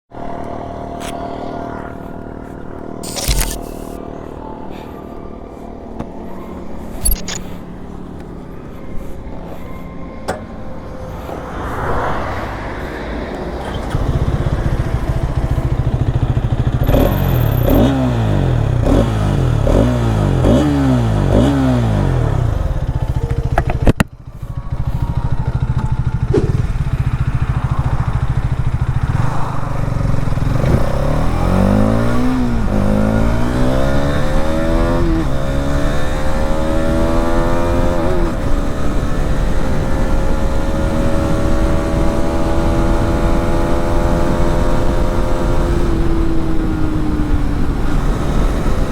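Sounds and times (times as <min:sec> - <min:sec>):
motorcycle engine accelerating: 0:00.1 - 0:48.9
motorcycle throttle blips: 0:22.8 - 0:29.3.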